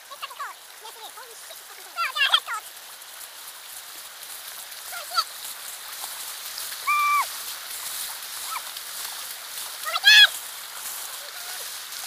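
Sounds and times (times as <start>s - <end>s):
floodwater rushing: 0.0s - 12.0s
high-pitched cries: 6.8s - 7.3s.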